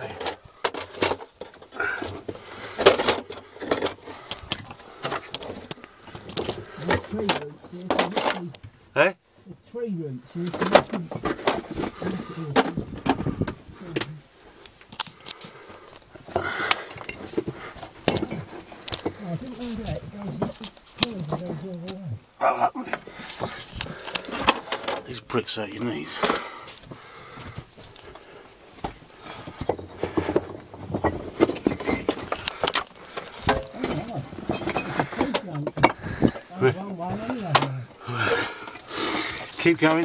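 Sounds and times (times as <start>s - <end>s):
murmured voice: 9.6s - 14.3s, 19.1s - 23.2s, 33.6s - 38.6s
bricks clinking and scraping: 10.5s - 22.1s, 22.8s - 25.3s, 27.6s - 40.0s.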